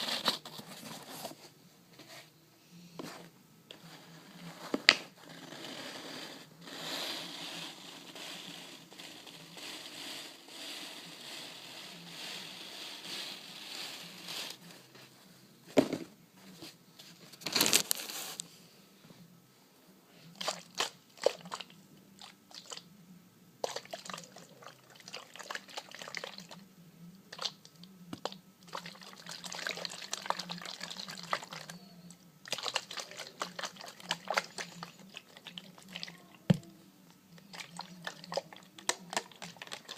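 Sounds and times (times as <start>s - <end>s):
crinkling and crunching: 17.3s - 18.4s.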